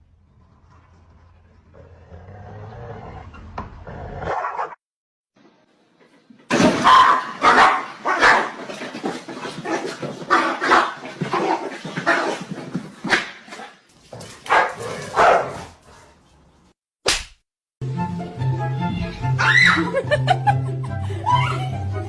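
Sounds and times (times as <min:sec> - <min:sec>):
dog barking: 0:04.3 - 0:04.8, 0:06.8 - 0:08.6, 0:14.5 - 0:15.8.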